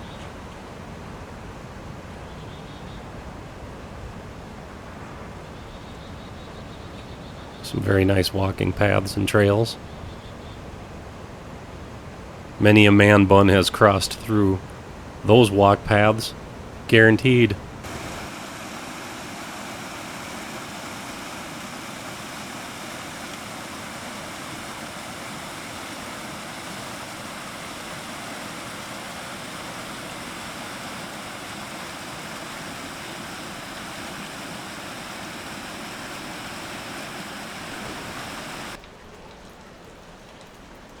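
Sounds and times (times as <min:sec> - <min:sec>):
waterfall rushing: 0:12.8 - 0:38.8.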